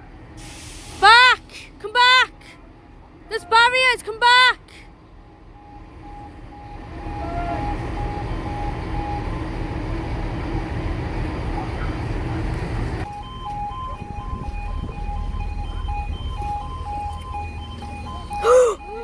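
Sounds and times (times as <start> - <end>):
level crossing warning alarm: 5.3 - 10.6, 13.0 - 19.0
steady low rumble: 8.0 - 19.0.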